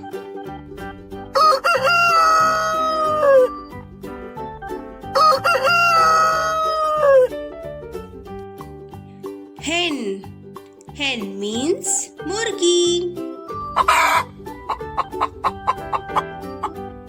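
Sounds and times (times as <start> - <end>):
soft background music: 0.0 - 17.0
rooster crowing: 1.4 - 3.6, 5.2 - 7.3.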